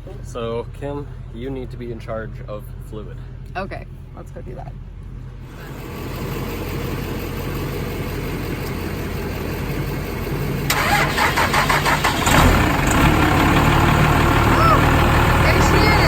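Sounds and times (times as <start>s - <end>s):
truck engine running: 0.0s - 16.0s
rhythmic engine clatter: 5.4s - 16.0s.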